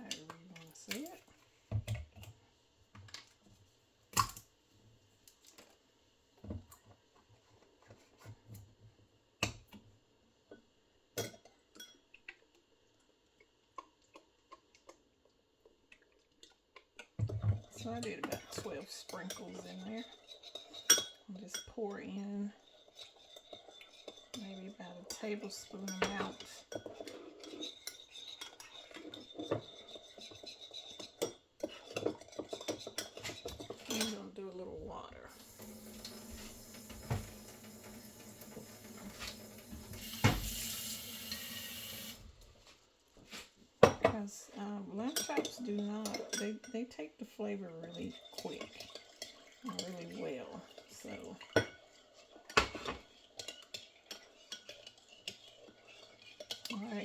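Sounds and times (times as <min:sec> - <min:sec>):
spoon scraping a bowl: 0:17.6 - 0:21.7, 0:22.5 - 0:34.3, 0:47.8 - 0:57.0
knocks on kitchen items: 0:39.2 - 0:40.7.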